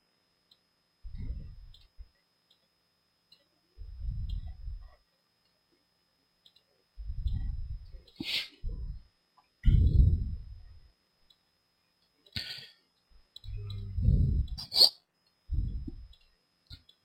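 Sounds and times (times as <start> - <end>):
muffled rumbles on microphone: 1.1 - 1.8, 3.8 - 5.0, 7.0 - 8.0, 8.6 - 10.8, 13.4 - 14.6, 15.5 - 16.1
computer mouse clicks: 1.7 - 1.9, 6.4 - 8.2.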